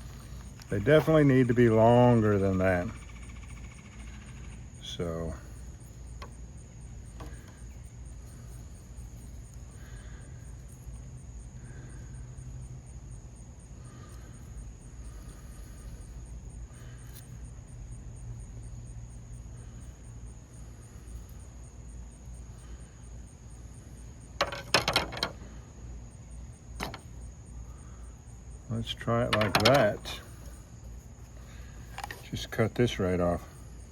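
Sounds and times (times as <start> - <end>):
insects trilling: 0.0 - 33.9
handling clicks rattle: 29.3 - 30.2.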